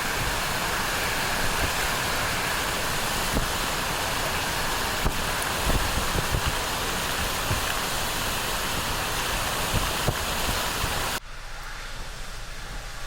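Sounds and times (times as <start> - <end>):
rushing flood water: 0.0 - 11.2
wind buffeting microphone: 0.0 - 11.2.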